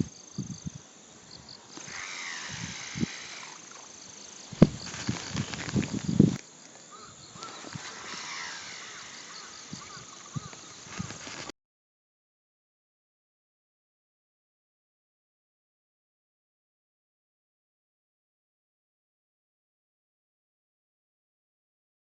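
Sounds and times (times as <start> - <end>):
fishing reel spool spinning: 1.7 - 6.2, 7.4 - 11.5.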